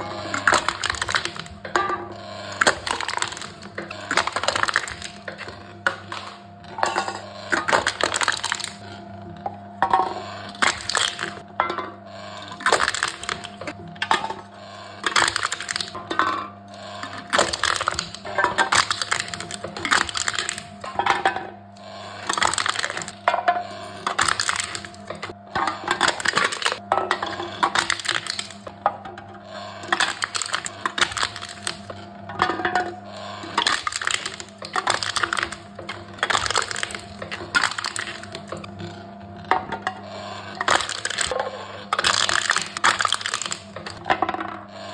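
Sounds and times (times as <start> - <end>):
machine low hum: 0.0 - 44.9
cans being crushed: 0.4 - 1.6, 2.5 - 8.8, 10.5 - 11.4, 12.6 - 13.7, 15.1 - 16.0, 17.1 - 21.0, 22.2 - 23.2, 24.0 - 26.8, 27.6 - 28.7, 29.8 - 31.9, 33.5 - 38.7, 40.6 - 44.2.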